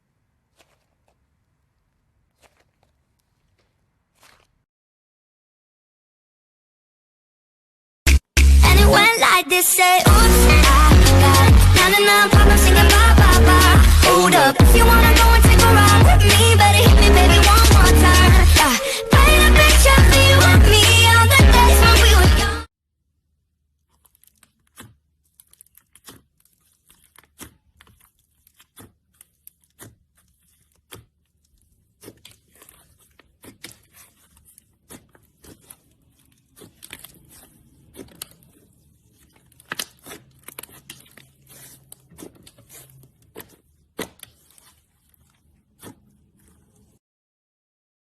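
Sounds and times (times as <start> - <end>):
pop song: 8.1 - 22.7.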